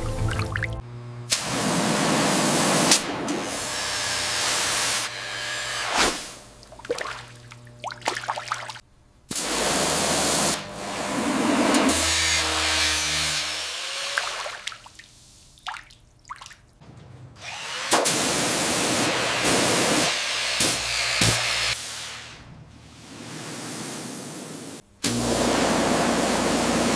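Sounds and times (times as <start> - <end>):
low motor hum: 0.0 - 1.3
water spray hissing on metal: 18.1 - 26.9.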